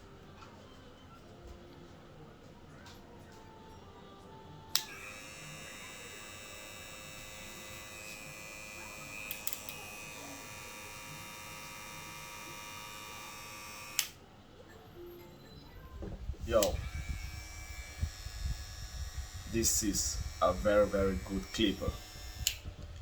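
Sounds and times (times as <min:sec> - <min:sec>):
hair clipper motor whine: 0:04.7 - 0:14.2, 0:16.4 - 0:23.0
small clicks: 0:04.8 - 0:05.1, 0:09.2 - 0:09.8.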